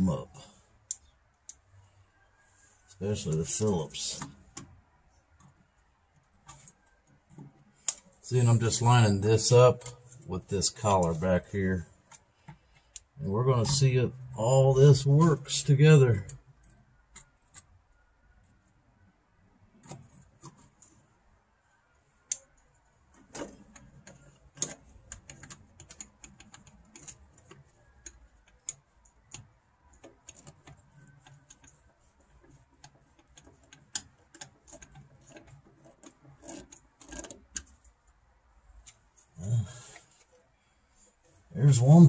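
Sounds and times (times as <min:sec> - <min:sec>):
small clicks and metallic taps: 0:00.8 - 0:01.9, 0:03.2 - 0:08.2, 0:12.0 - 0:14.0, 0:22.0 - 0:39.2.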